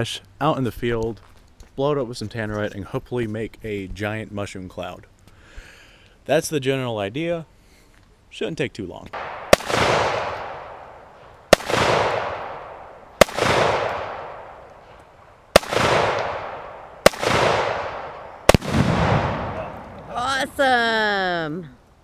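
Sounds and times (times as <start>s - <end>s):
gunshots with echo: 9.2s - 14.6s, 15.6s - 20.2s.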